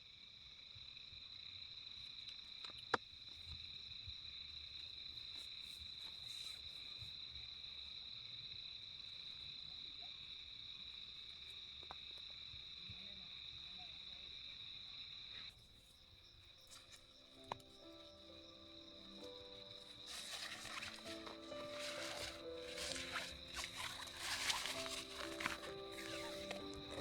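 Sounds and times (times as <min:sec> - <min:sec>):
insects chirring: 0:00.0 - 0:27.0.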